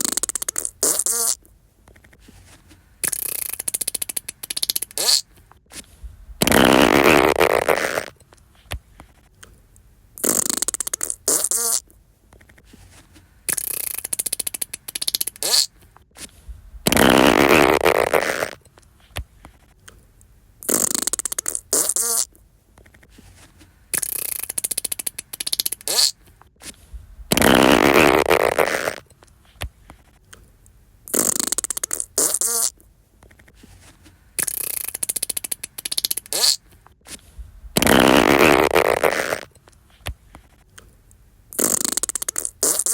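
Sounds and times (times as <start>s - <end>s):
fart sound effects: 0.0s - 1.4s, 3.0s - 5.3s, 6.4s - 8.2s, 10.2s - 11.9s, 13.5s - 15.8s, 16.8s - 18.6s, 20.6s - 22.3s, 24.0s - 26.2s, 27.3s - 29.1s, 31.1s - 32.8s, 34.4s - 36.6s, 37.7s - 39.6s, 41.5s - 42.9s.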